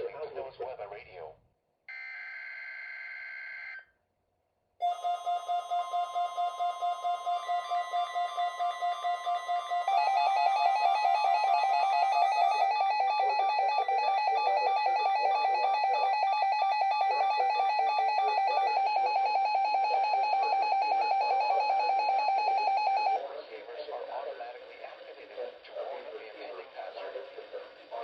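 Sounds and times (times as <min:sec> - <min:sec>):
two-pitch alarm warble: 0:01.9 - 0:03.8, 0:04.8 - 0:23.2
rapid alarm beeping: 0:04.8 - 0:23.2.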